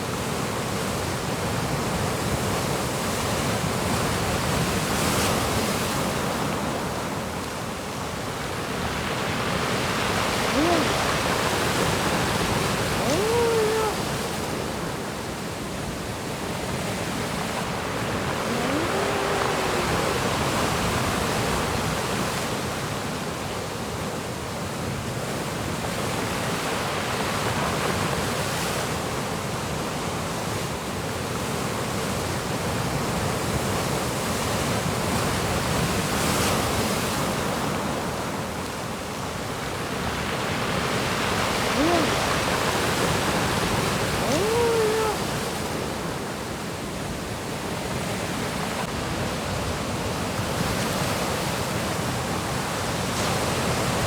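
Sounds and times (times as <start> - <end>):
brief rising calls: 10.6 - 11.2, 12.9 - 14.2, 18.4 - 20.4, 44.2 - 45.3
waves breaking: 18.3 - 20.5.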